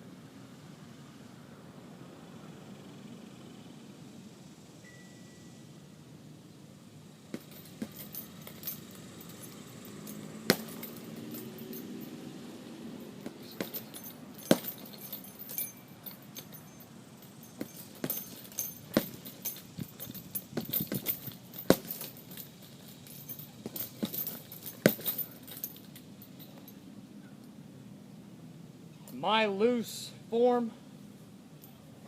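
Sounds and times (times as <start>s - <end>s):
gloves punching heavy bag: 7.3s - 9.4s, 10.1s - 11.5s, 13.1s - 15.6s, 17.4s - 25.4s
chain rattling: 7.3s - 26.8s.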